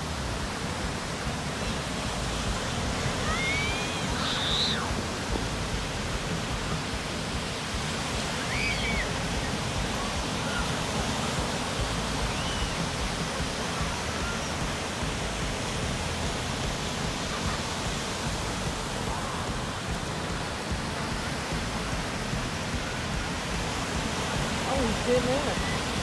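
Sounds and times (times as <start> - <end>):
flowing water rushing: 0.0 - 26.0
faint high chirps: 12.2 - 14.7.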